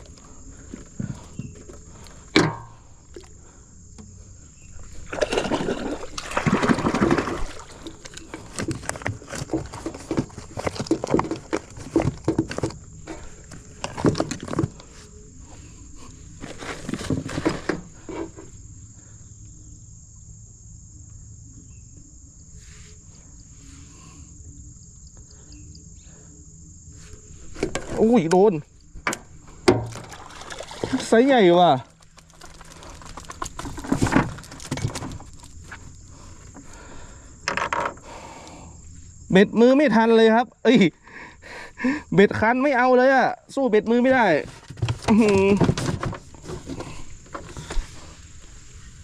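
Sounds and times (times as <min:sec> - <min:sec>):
crickets chirring: 0:00.0 - 0:49.0
water splashing and sloshing: 0:04.8 - 0:15.1, 0:29.5 - 0:36.7.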